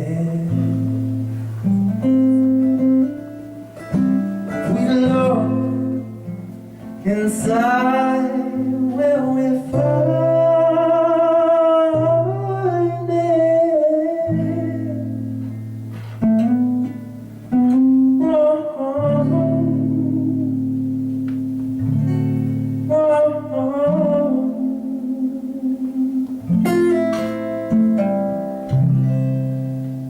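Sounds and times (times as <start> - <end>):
acoustic guitar chords: 0.0 - 30.0
person singing long notes: 7.0 - 15.1, 18.2 - 20.7, 22.8 - 26.9.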